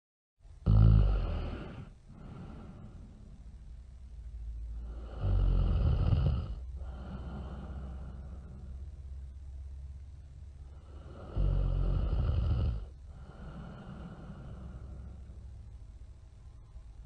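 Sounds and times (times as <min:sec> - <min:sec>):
cartoon character snoring: 0:00.6 - 0:02.8, 0:04.8 - 0:08.5, 0:10.9 - 0:15.0.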